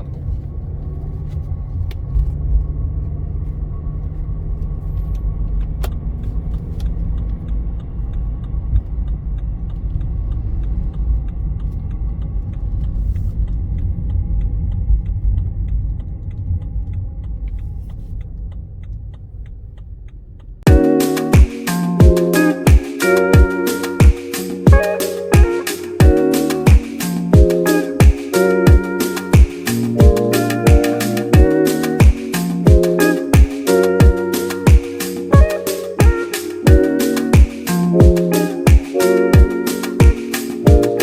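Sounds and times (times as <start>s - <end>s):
car road and engine rumble: 0.0s - 21.1s.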